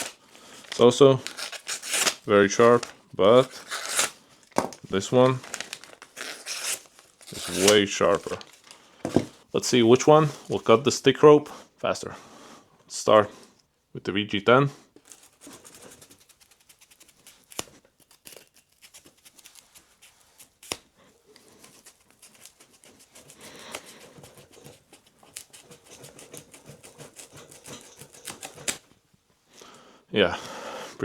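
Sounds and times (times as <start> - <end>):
knife sawing through rope: 6.2 - 7.8, 15.0 - 28.8.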